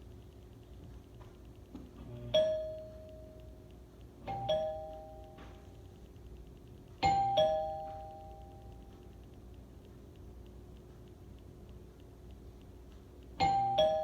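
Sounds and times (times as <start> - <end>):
two-tone doorbell chime: 2.3 - 3.4, 4.2 - 5.7, 7.0 - 8.7, 13.4 - 14.0.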